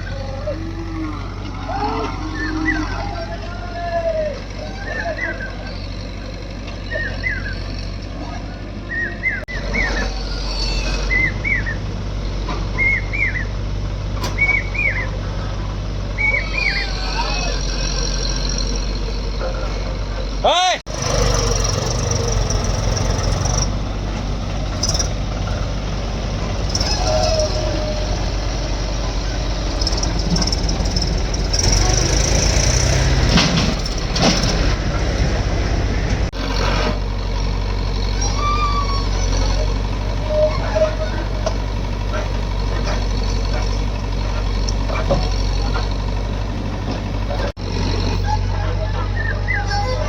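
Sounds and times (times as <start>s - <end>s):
diesel engine hum: 0.0s - 50.0s
chirping reverse alarm: 12.7s - 13.6s.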